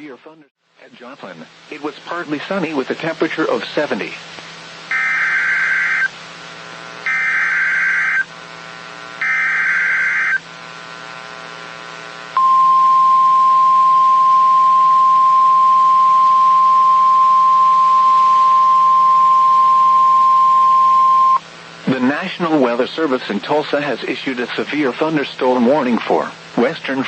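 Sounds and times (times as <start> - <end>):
steady warning alarm tone: 4.9 - 6.1, 7.1 - 8.3, 9.2 - 10.4, 12.4 - 21.4
digital header bursts: 7.1 - 8.2, 9.2 - 10.4.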